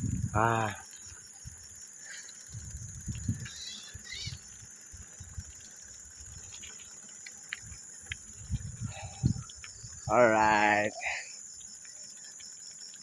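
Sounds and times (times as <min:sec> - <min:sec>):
low thumps and rumbles: 0:00.0 - 0:00.4
insects chirring: 0:00.0 - 0:13.0.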